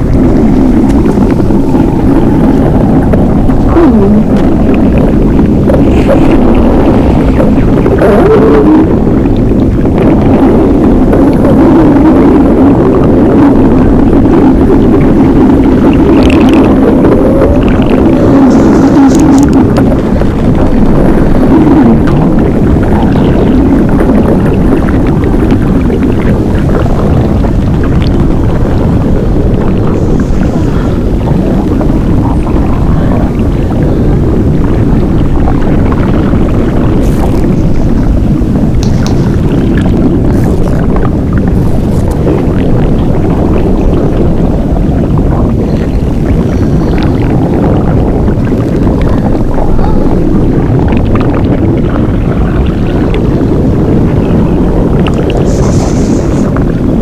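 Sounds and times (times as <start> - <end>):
loud low rumble: 0.0 - 57.0
small crackles: 0.0 - 57.0
small creaks and clicks: 38.8 - 42.4.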